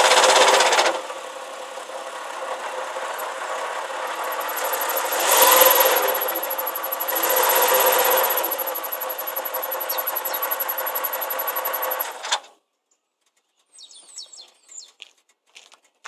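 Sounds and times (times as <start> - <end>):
car engine idling: 0.0 - 12.3
clutch and gearbox noise: 2.4 - 12.6.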